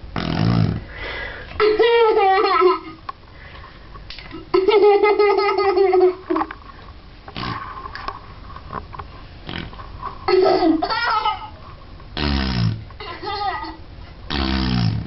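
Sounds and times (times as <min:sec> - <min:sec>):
cup fart noises in bathwater: 0:00.1 - 0:00.9, 0:07.3 - 0:07.8, 0:09.4 - 0:09.7, 0:12.2 - 0:12.9, 0:14.3 - 0:15.0
child laughing: 0:01.6 - 0:03.0, 0:04.3 - 0:06.5, 0:10.3 - 0:11.6, 0:13.0 - 0:13.8.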